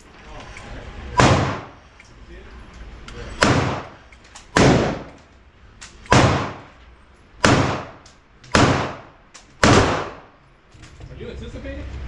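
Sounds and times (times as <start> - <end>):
pistol shots with echo: 1.2 - 1.8, 3.4 - 4.0, 4.6 - 5.2, 6.1 - 6.7, 7.4 - 10.3.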